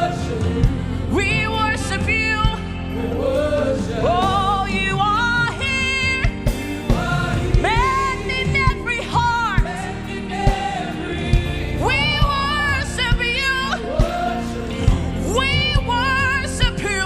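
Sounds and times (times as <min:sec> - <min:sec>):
band sustained chords and bass: 0:00.0 - 0:17.0.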